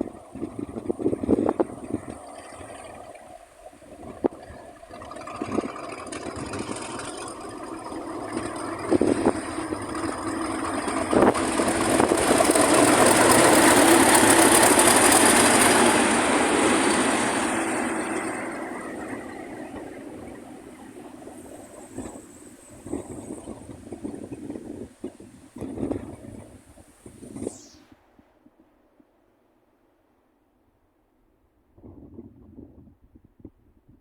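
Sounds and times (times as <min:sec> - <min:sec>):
diesel locomotives passing: 0:00.0 - 0:25.0.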